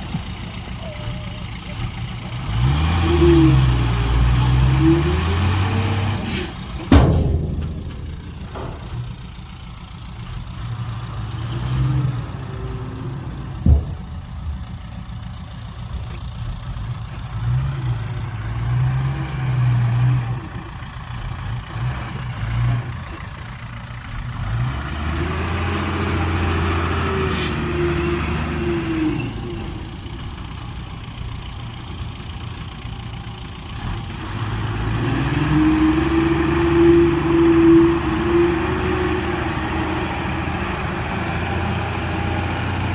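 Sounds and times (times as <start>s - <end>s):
diesel engines idling and revving: 0.0s - 42.9s
sharp knock: 6.9s - 9.5s.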